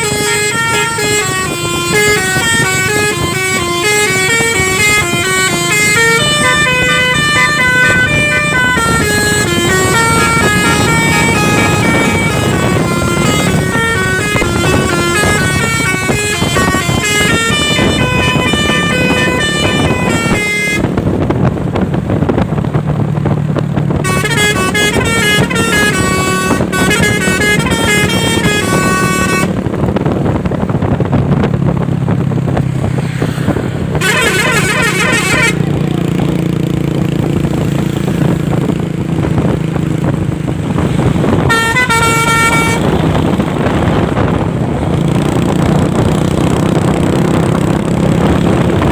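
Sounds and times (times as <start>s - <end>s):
musical air horns melody: 0.0s - 21.1s, 24.0s - 29.7s, 34.0s - 35.9s, 41.3s - 43.9s
low engine rumble: 0.0s - 48.9s.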